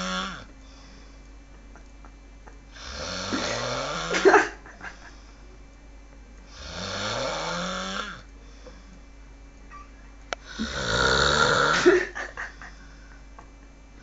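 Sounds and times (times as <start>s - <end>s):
person snoring heavily: 0.0s - 1.0s, 2.7s - 5.1s, 6.5s - 8.8s, 10.4s - 13.2s.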